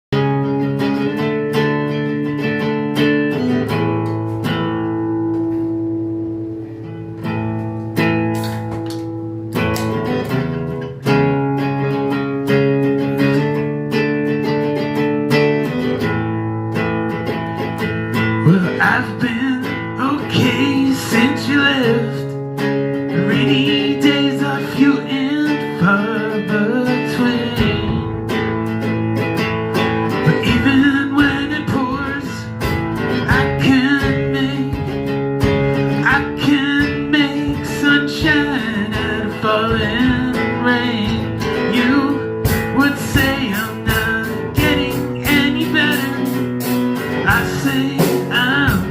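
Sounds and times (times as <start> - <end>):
bending melodic guitar line: 0.0 - 48.9
ringing guitar chords: 0.1 - 48.9.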